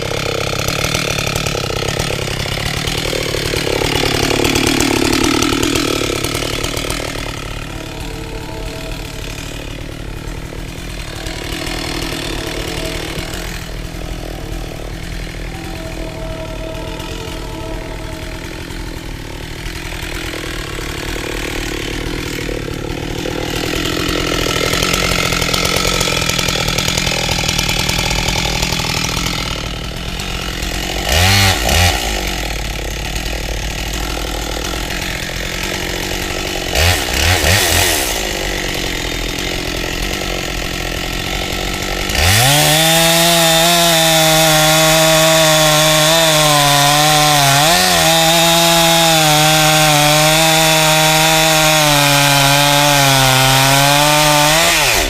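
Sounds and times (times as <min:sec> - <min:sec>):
chainsaw running: 0:00.0 - 0:55.0.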